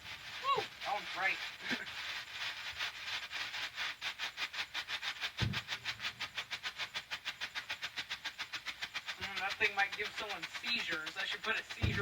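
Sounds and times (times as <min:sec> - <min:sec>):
strobe firework pulsing hiss: 0:00.0 - 0:12.0
low thump: 0:05.4 - 0:05.7.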